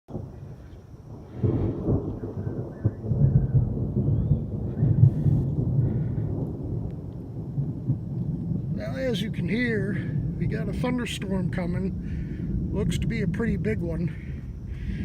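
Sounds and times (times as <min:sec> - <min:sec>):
thunder rumbling: 0:00.1 - 0:15.0.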